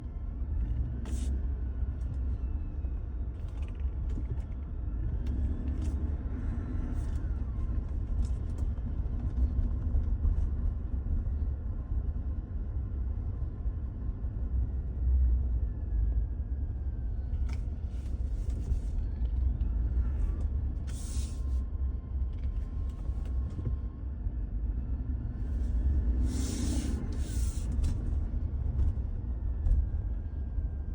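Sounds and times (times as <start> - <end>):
road vehicle rumble: 0.0 - 30.9
short hisses: 26.2 - 27.7.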